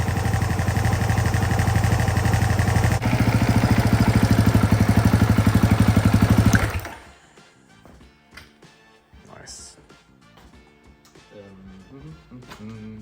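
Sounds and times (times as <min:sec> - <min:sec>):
motorcycle engine idling: 0:00.0 - 0:07.2.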